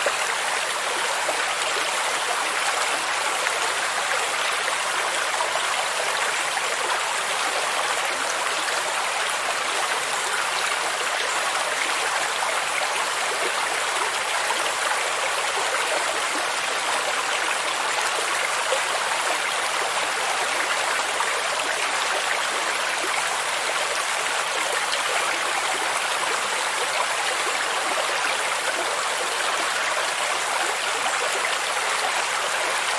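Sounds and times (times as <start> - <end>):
stream water babbling over stones: 0.0 - 32.9.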